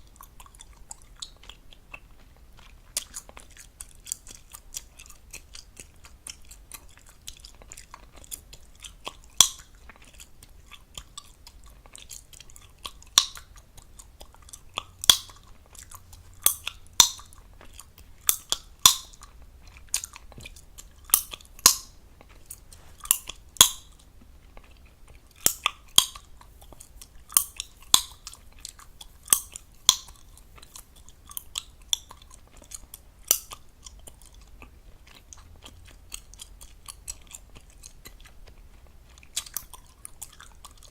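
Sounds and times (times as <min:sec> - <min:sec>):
wet gum chewing clicks: 0:00.0 - 0:40.9
loud gum pops: 0:15.0 - 0:15.5, 0:18.3 - 0:19.2, 0:20.0 - 0:23.9, 0:29.3 - 0:30.3.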